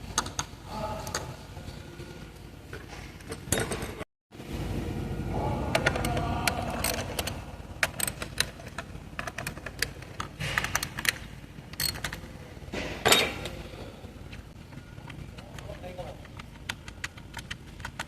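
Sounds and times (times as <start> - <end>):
ratchet tools clicking on metal: 6.8 - 12.2.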